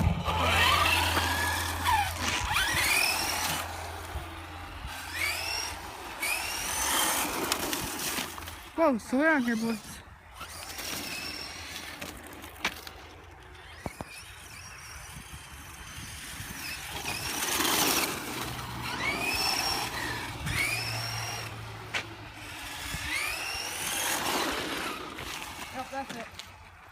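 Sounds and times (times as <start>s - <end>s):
toy car electric motor whining: 0.0s - 26.9s.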